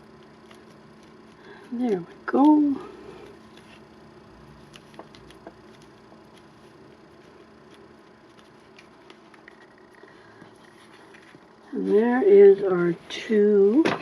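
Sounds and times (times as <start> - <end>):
paper rustling and clicks: 4.6 - 9.7.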